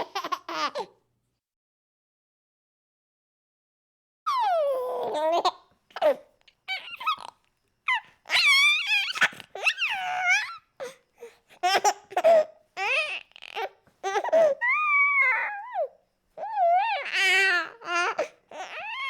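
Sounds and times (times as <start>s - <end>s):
baby fussing and babbling: 4.3s - 19.0s.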